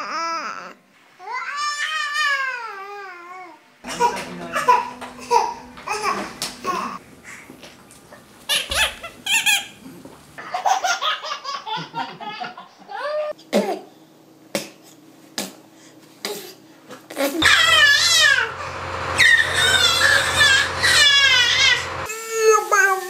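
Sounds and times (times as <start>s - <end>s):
baby laughing and babbling: 0.0s - 7.0s, 12.8s - 14.0s.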